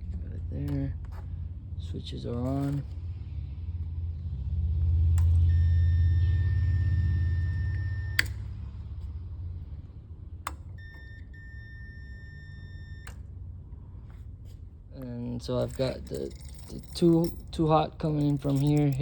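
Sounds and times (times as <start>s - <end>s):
steady low hum: 0.0s - 19.0s
continuity tester high beep: 5.5s - 8.4s, 10.8s - 13.2s.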